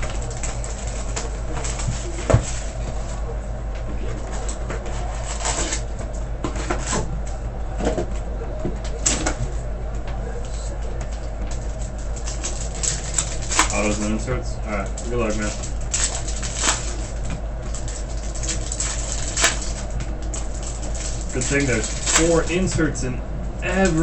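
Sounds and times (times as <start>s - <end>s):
wrapping crinkling and rustling: 0.0s - 3.2s, 4.1s - 5.9s, 10.4s - 23.1s
steady low hum: 0.0s - 24.0s.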